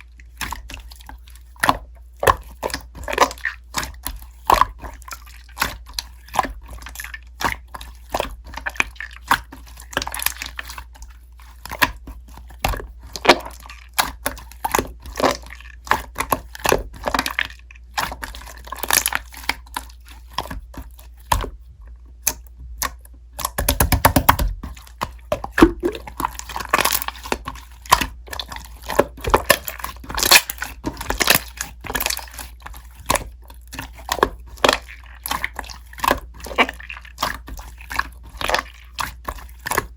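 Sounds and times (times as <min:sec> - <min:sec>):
slime crackling and popping: 0:23.4 - 0:39.9.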